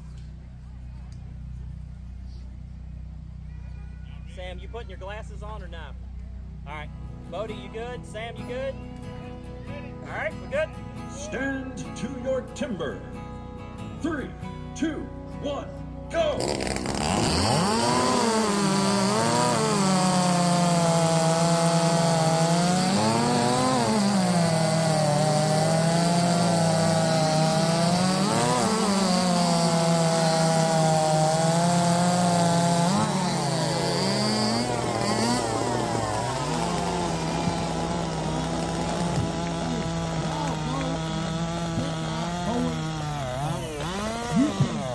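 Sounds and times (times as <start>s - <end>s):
chainsaws cutting through log: 16.2s - 44.9s.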